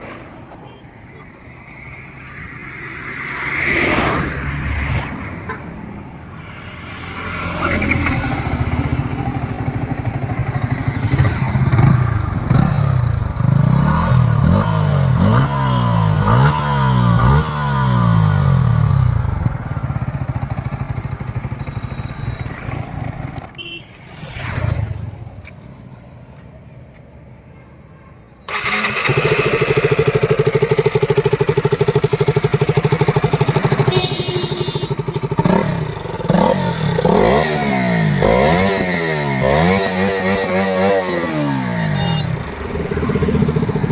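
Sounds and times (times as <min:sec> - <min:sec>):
motorcycle engine revving: 0:06.4 - 0:25.7, 0:28.5 - 0:43.9
motorcycle engine idling: 0:08.0 - 0:15.2, 0:18.1 - 0:23.8, 0:28.5 - 0:38.7, 0:41.4 - 0:43.9.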